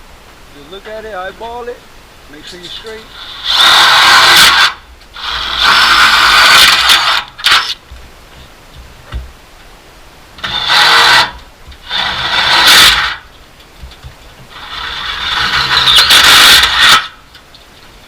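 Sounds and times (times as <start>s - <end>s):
power drill boring through metal: 3.1s - 7.7s, 10.4s - 13.2s, 14.5s - 17.2s.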